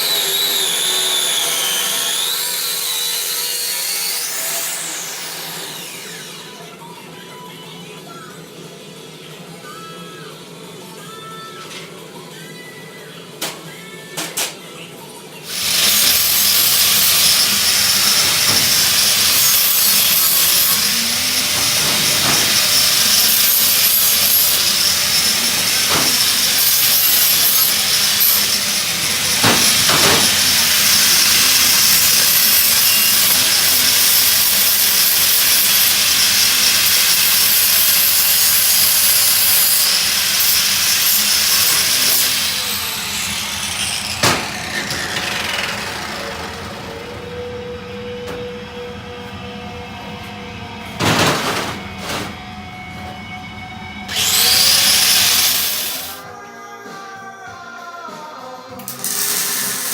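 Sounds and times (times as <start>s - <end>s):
metalworking tool hissing: 15.5s - 45.8s, 54.1s - 56.2s, 58.8s - 59.9s.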